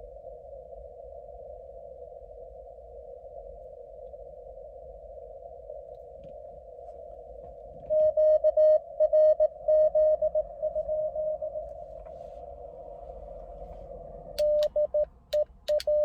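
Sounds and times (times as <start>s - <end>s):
morse code tones: 7.9s - 11.7s, 14.4s - 16.0s.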